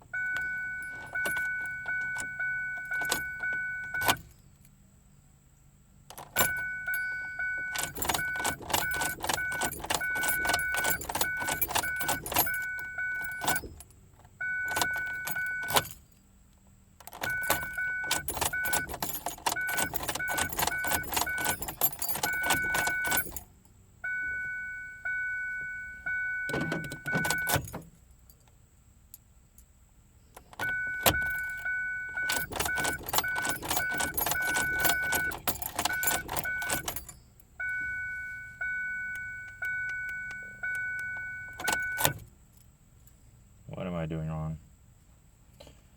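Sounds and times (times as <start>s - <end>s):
car warning chime beeping: 0.0s - 4.3s, 6.2s - 13.8s, 14.4s - 16.0s, 17.1s - 23.4s, 24.0s - 27.8s, 30.6s - 42.2s
keys jangling on a key ring: 0.2s - 4.7s, 6.1s - 13.9s, 14.7s - 16.1s, 17.1s - 23.5s, 26.5s - 28.5s, 30.5s - 37.4s.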